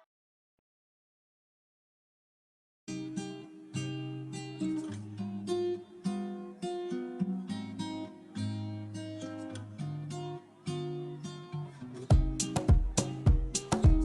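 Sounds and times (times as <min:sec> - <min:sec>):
acoustic guitar chords: 0:02.9 - 0:14.0.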